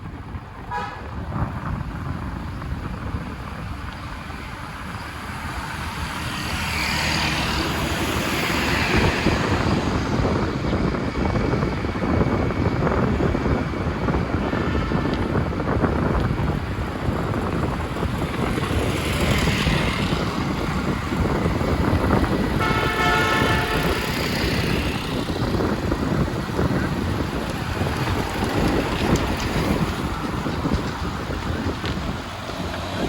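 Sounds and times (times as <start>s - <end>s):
road traffic noise: 0.0s - 33.0s
vehicle horn honking: 0.7s - 1.1s, 22.6s - 24.6s.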